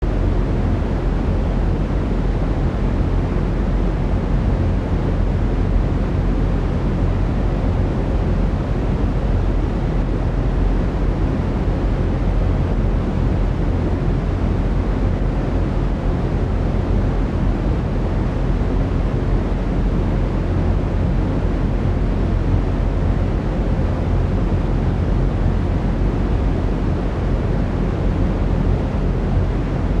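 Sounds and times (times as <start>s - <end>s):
brown noise: 0.0s - 30.0s.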